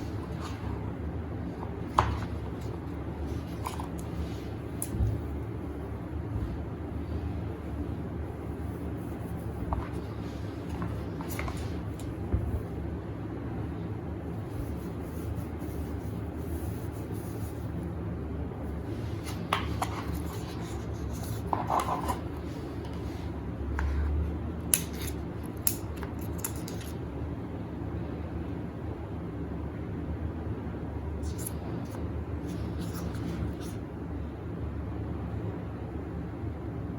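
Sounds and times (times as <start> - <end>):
small clicks and handling noises: 24.6 - 27.0.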